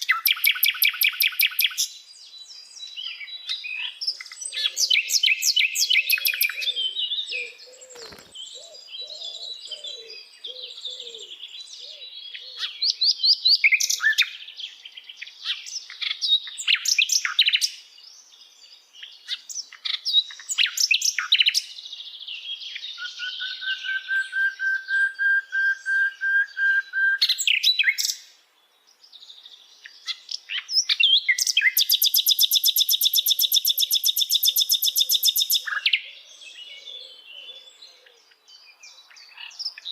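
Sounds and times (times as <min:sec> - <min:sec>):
fast bird trill: 0:00.0 - 0:01.8, 0:04.8 - 0:06.7, 0:31.4 - 0:35.8
bird singing chirps and whistles: 0:00.0 - 0:17.8, 0:19.0 - 0:28.3, 0:29.1 - 0:39.9.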